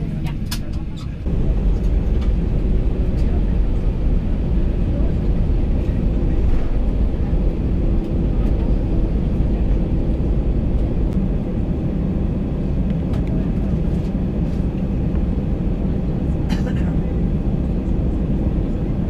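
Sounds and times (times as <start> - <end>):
airplane engines rumbling in cabin: 0.0 - 19.0.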